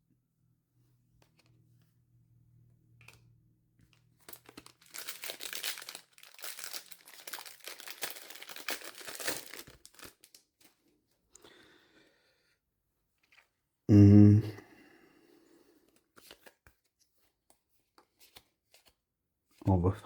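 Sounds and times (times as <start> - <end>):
foil wrapper crinkling and tearing: 4.2 - 10.8.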